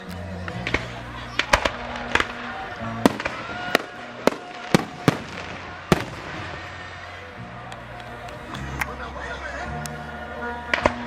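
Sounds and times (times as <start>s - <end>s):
fireworks bangs: 0.5s - 7.0s.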